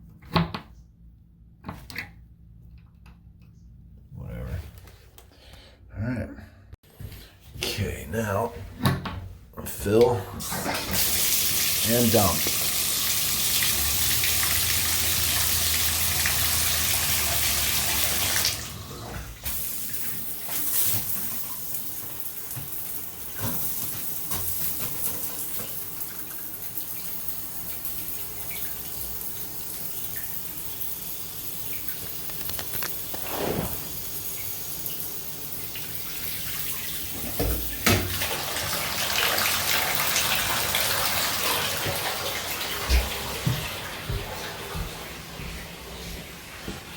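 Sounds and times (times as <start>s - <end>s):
faucet running into bathtub: 10.4s - 43.8s.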